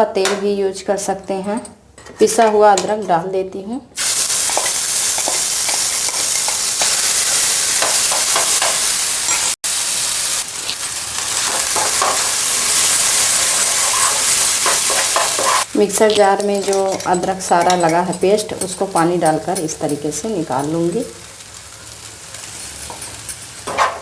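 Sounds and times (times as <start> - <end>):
paste sizzling in a pan: 4.0 - 18.0, 19.4 - 24.0.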